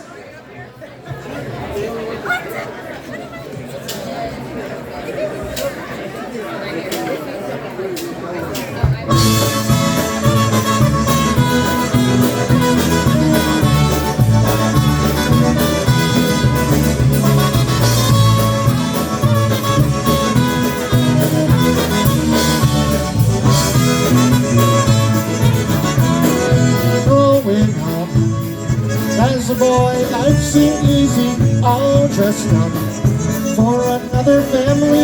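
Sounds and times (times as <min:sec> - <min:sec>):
polka band playing: 0:08.5 - 0:35.0
accordion melody: 0:09.0 - 0:35.0.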